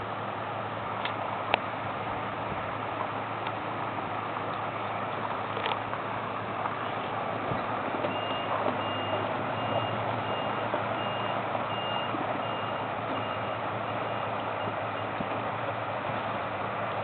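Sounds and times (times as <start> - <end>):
engine running: 0.0 - 17.0
outdoor noise: 0.0 - 17.0
reversing beeper: 8.0 - 15.2.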